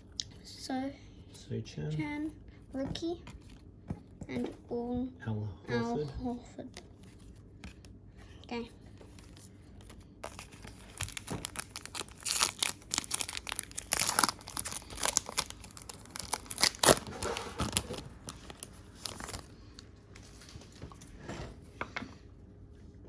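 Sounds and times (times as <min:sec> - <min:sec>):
wrapper tearing and crinkling: 0:09.1 - 0:19.5.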